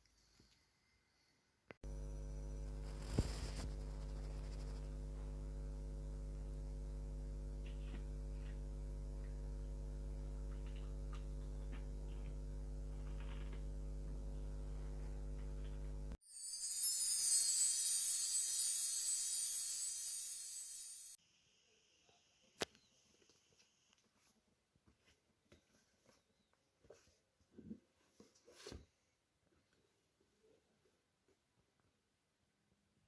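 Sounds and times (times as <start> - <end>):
electrical hum: 1.8 - 16.2.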